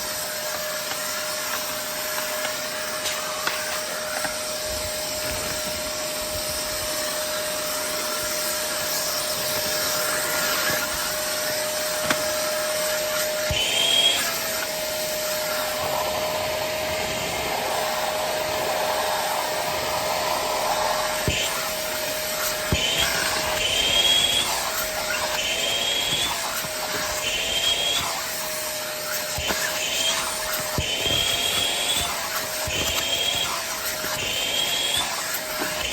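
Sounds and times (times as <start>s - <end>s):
vacuum cleaner whining: 0.0s - 35.9s.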